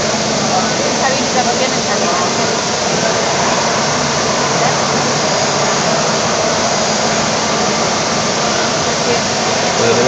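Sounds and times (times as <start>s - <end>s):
machining centre whirring: 0.0s - 10.0s.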